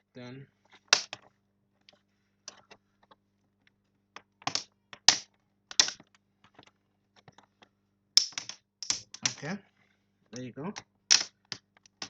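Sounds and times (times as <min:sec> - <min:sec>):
plastic clicks and snaps: 0:04.2 - 0:09.5, 0:10.4 - 0:12.0.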